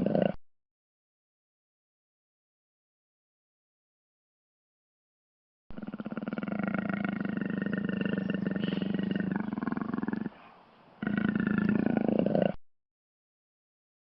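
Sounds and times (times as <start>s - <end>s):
jaguar roaring: 5.8s - 10.4s, 11.0s - 12.6s.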